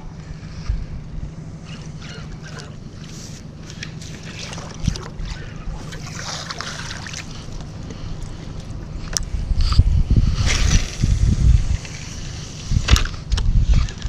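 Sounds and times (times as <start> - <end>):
boat motor hum: 0.0 - 14.0
water splashes: 1.7 - 8.9
wind on microphone: 7.2 - 14.0.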